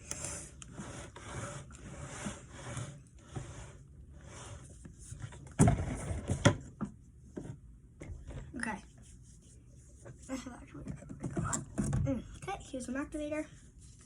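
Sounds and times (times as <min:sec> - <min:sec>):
glue stirring scrapes: 0:00.1 - 0:05.0.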